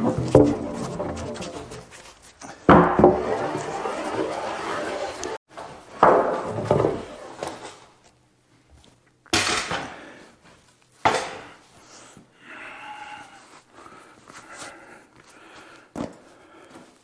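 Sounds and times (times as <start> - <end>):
hard objects clattering: 0.0 - 5.4.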